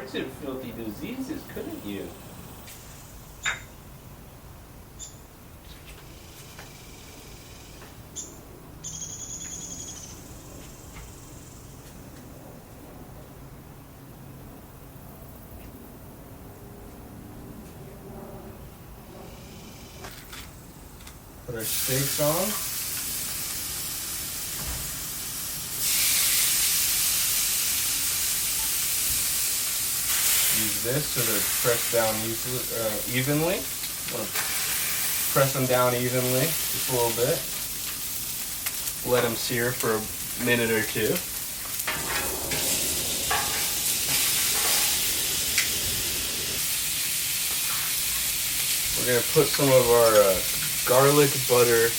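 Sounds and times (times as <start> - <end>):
steaks sizzling on a griddle: 21.5 - 51.9.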